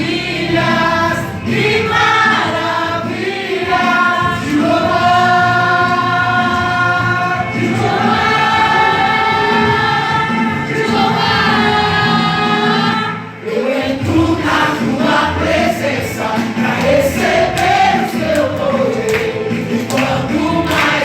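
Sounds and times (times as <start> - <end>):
choir singing: 0.0 - 21.0
worship band playing: 0.0 - 21.0
drums beating: 13.9 - 21.0.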